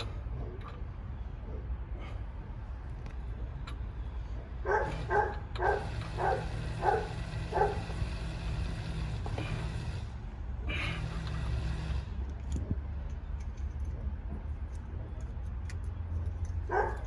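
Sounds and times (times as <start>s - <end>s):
dog barking: 4.6s - 7.9s, 16.7s - 17.0s.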